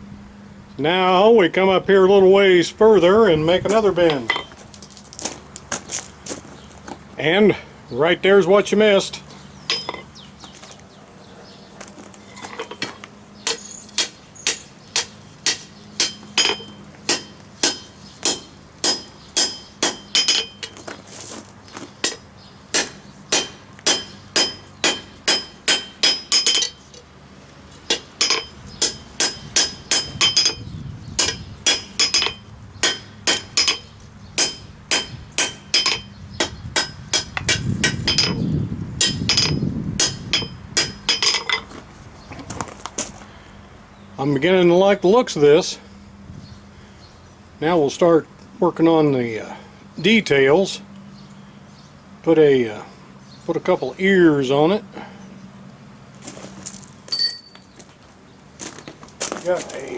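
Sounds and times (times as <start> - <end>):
hammer ringing on anvil: 9.7 - 10.1, 13.5 - 20.7, 22.8 - 26.8, 27.9 - 30.6, 31.2 - 36.1, 36.8 - 38.4, 39.0 - 41.6, 57.1 - 57.8.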